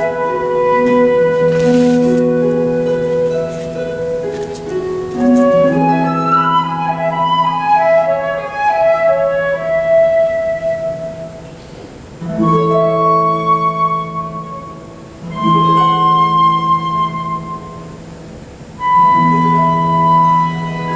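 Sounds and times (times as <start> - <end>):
flute melody: 0.0 - 20.9
low sustained harp notes: 0.0 - 20.9.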